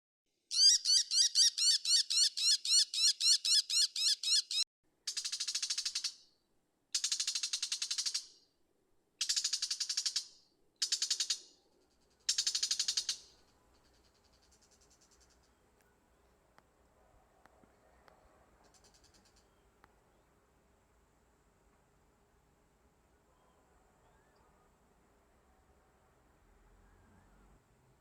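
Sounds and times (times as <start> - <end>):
bird sharp repeated notes: 0.5 - 6.0
bird harsh chattering rattles: 9.2 - 15.5.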